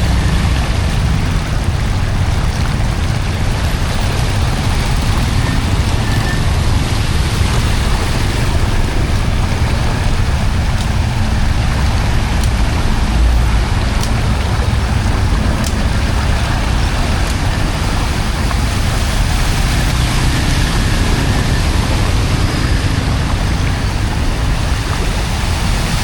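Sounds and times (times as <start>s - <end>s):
rushing floodwater: 0.0s - 26.0s.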